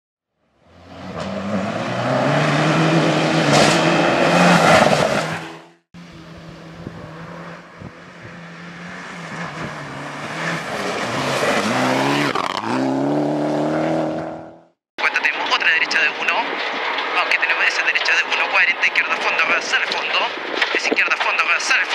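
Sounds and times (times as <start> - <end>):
rally car engine revving hard: 0.7 - 14.7.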